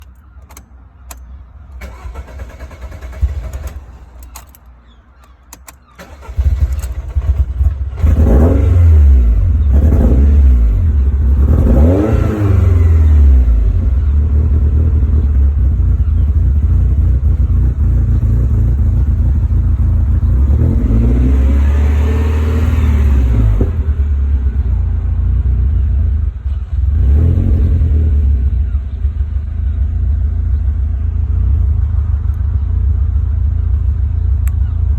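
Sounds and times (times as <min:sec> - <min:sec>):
car engine cranking: 0:00.0 - 0:24.6
car engine revving: 0:06.0 - 0:34.7
car engine rough idle: 0:13.6 - 0:20.6, 0:28.5 - 0:34.9.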